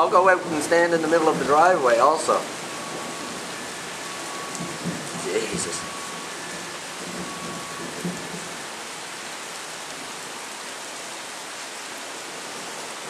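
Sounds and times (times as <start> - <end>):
heavy rain hissing: 0.0 - 13.0.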